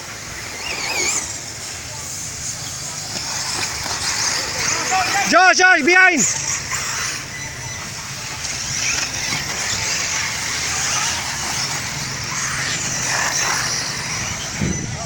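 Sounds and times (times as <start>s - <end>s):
tyres hissing on dirt: 0.0s - 14.7s
rc car motors whining: 0.0s - 15.0s.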